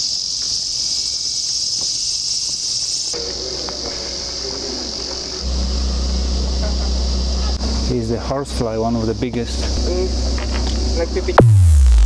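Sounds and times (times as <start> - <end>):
insects chorus: 0.0 - 11.4.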